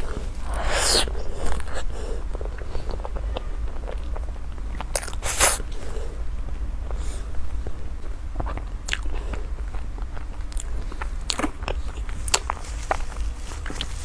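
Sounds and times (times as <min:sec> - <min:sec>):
loud bite crunch: 0:00.0 - 0:02.0, 0:04.8 - 0:05.8
chewing: 0:00.0 - 0:07.0, 0:07.6 - 0:14.0
steady low hum: 0:00.0 - 0:14.0
wet mouth clicks: 0:00.4 - 0:01.9, 0:04.8 - 0:05.7.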